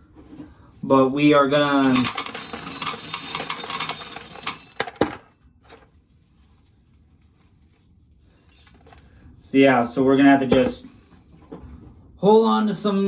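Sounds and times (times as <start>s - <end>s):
rapid clatter of small clicks: 1.8s - 5.1s.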